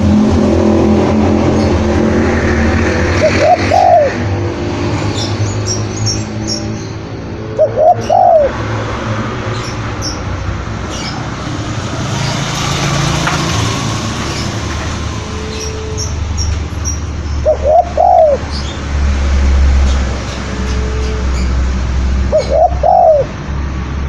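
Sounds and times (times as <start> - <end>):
dove cooing: 3.2 - 4.3, 7.3 - 9.1, 17.4 - 18.7, 22.3 - 23.4.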